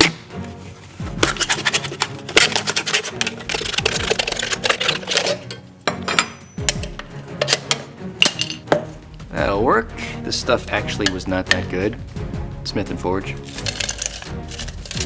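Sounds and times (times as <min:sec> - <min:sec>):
paper slips rattling in container: 0:01.0 - 0:05.6, 0:13.4 - 0:15.0.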